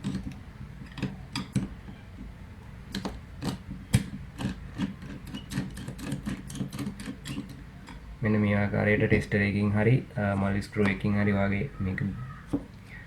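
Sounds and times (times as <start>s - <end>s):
metal scraping on plastic: 3.0s - 8.1s.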